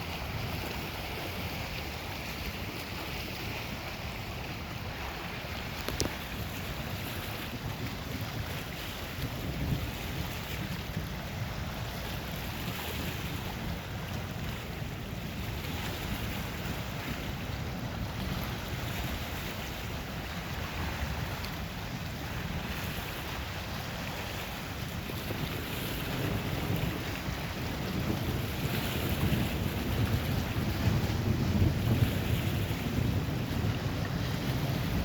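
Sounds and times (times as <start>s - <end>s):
waves washing on shore: 0.0s - 35.0s
wind buffeting microphone: 0.0s - 35.0s.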